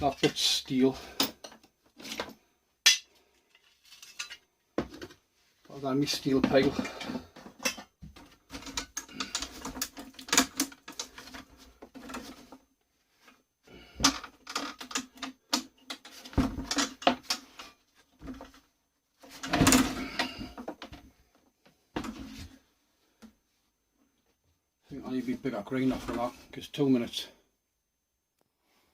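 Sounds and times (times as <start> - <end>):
metal parts clanking and rattling: 1.1 - 5.1, 6.6 - 12.6, 13.9 - 18.6, 19.3 - 20.7.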